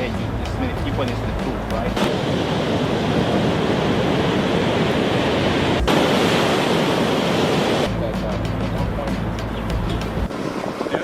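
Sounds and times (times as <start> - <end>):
steady rushing noise: 0.0 - 11.0.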